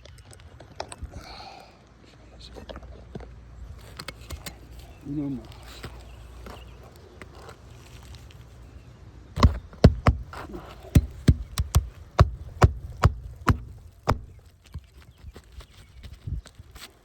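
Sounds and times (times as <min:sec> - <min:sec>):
hammer driving nails into shingle: 0:09.4 - 0:14.9.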